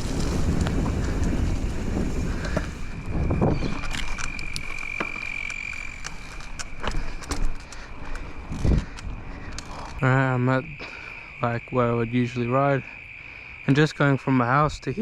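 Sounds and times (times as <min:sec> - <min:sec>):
wind on microphone: 0:00.0 - 0:04.9, 0:08.2 - 0:09.9
bike rumble clicks and rattles: 0:00.0 - 0:10.0.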